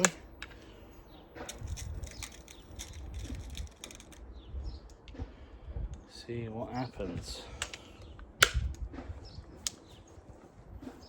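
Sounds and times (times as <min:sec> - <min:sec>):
wind rumble on microphone: 0:01.3 - 0:11.0
clicks and rattles of handling: 0:01.4 - 0:05.1.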